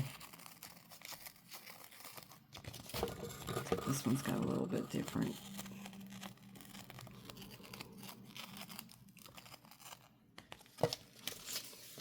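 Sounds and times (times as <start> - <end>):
packaging rustling and crinkling: 0.0 - 12.0.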